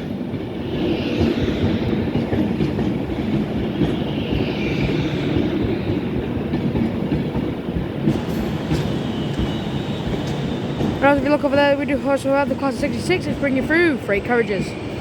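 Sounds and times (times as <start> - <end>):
train wheels clattering over joints: 6.5 - 13.7.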